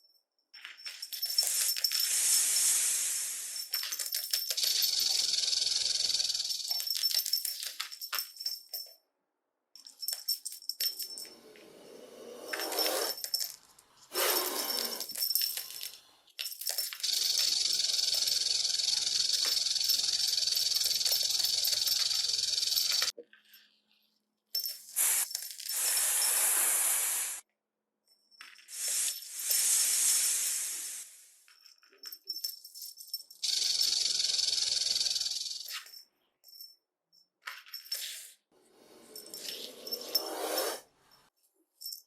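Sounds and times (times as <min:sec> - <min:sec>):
snake rattling: 0:00.9 - 0:07.9, 0:16.6 - 0:23.2, 0:33.3 - 0:35.8
snake hissing: 0:01.4 - 0:03.6, 0:14.1 - 0:15.0, 0:25.0 - 0:27.4, 0:28.8 - 0:31.4.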